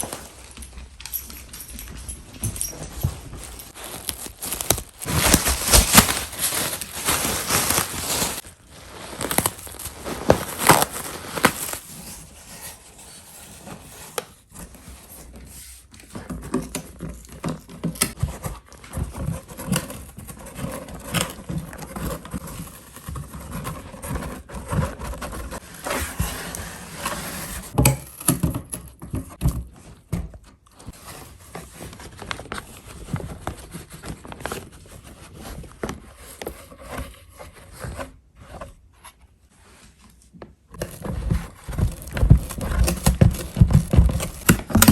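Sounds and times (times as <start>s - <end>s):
plastic packaging crinkling: 2.8s - 12.2s.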